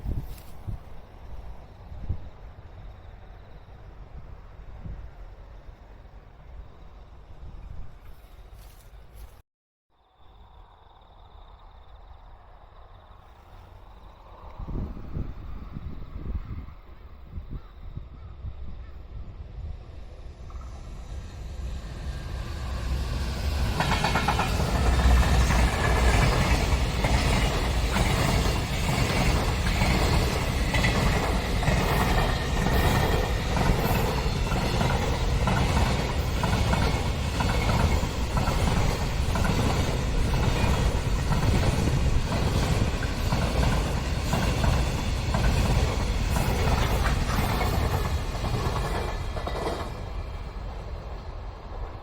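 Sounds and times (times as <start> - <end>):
train passing on rails: 0.0 - 9.4, 10.1 - 52.0
wheels clattering over rail joints: 23.5 - 50.8.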